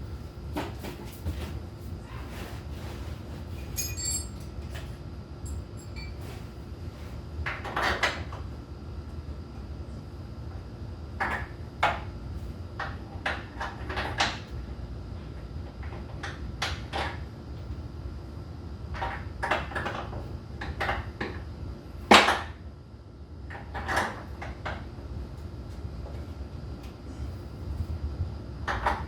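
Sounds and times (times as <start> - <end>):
steady low hum: 0.0 - 29.0
metal parts clanking and knocking: 3.6 - 4.6
ringing metallic rattle: 3.8 - 4.4.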